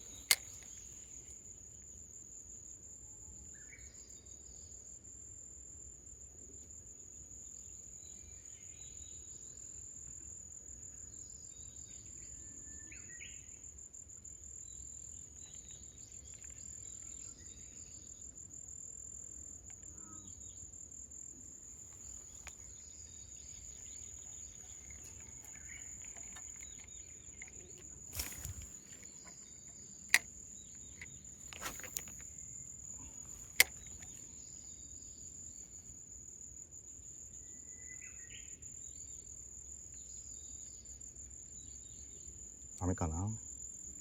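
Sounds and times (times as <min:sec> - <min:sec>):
sharp clicks: 0:00.0 - 0:00.8, 0:23.6 - 0:34.2
high-pitched insect trill: 0:07.4 - 0:44.0.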